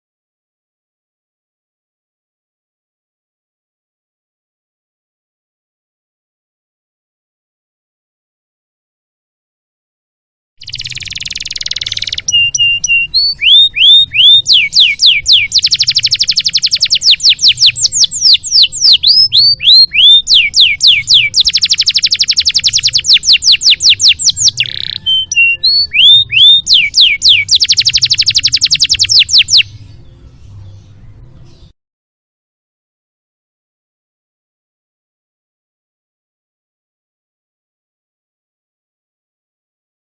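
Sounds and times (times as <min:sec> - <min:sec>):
canary singing: 0:10.6 - 0:31.7.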